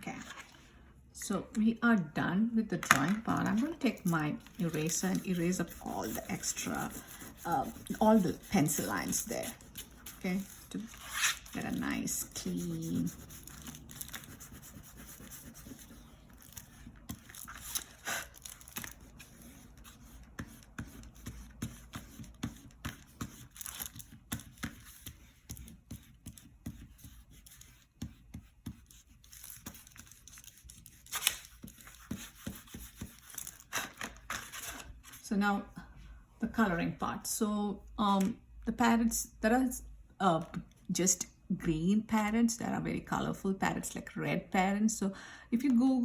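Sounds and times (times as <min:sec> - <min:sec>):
eraser rubbing on paper: 0:03.5 - 0:18.3, 0:19.0 - 0:33.6.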